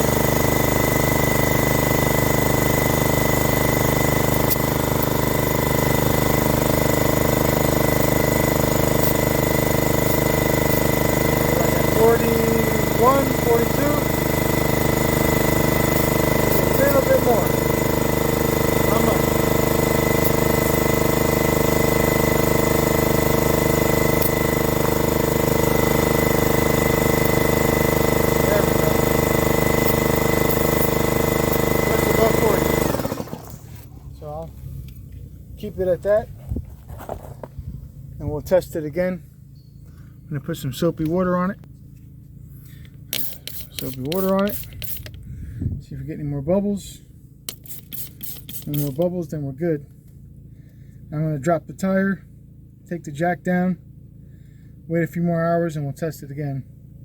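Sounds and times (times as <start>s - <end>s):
air compressor running: 0.0s - 54.9s.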